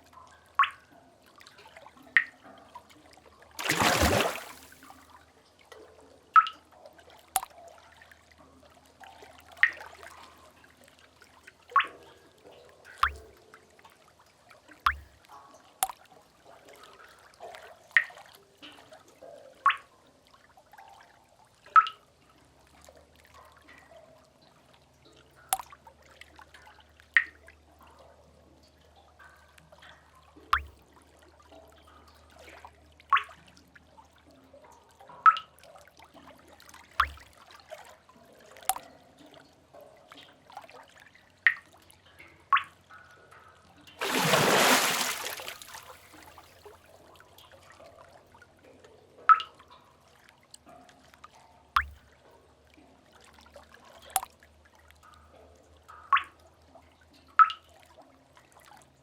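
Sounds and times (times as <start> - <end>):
water drips ringing: 0.0 - 2.9, 3.6 - 4.9, 6.3 - 8.4, 9.0 - 10.7, 11.6 - 13.7, 14.7 - 18.8, 21.7 - 22.1, 23.4 - 25.9, 26.6 - 28.0, 28.6 - 32.3, 33.1 - 33.4, 34.8 - 35.6, 36.8 - 37.6, 38.6 - 40.4, 41.3 - 46.5, 49.2 - 49.9, 51.8 - 52.3, 54.0 - 57.7
water splash: 3.6 - 4.9, 13.0 - 13.3, 37.0 - 37.4, 44.0 - 46.4.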